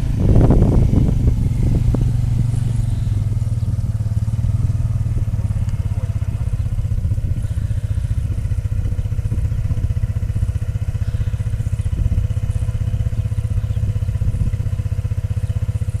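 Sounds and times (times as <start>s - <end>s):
atv engine running: 0.0s - 16.0s.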